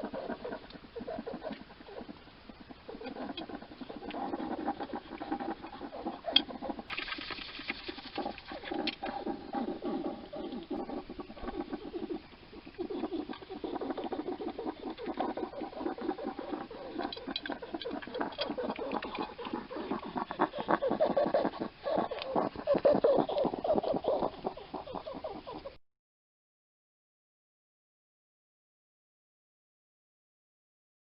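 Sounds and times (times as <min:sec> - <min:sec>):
hedgehog snuffling and rattly breathing: 0:12.8 - 0:25.6.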